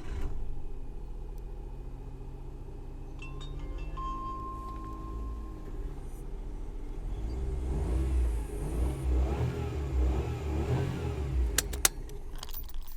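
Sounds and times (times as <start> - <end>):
car engine revving: 7.0 - 11.9
sharp clicks: 11.6 - 12.2.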